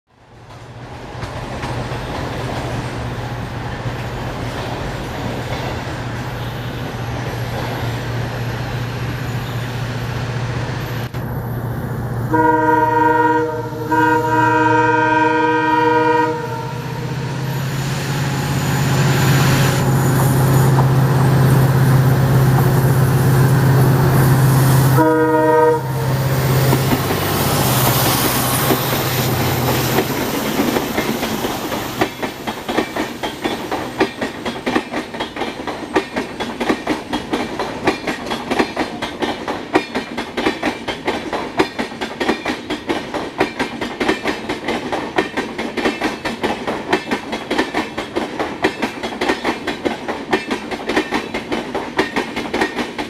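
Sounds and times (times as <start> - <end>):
diesel locomotive engine droning: 0.3 - 40.5
multi-tone train horn blasts: 12.3 - 20.8, 23.0 - 26.8.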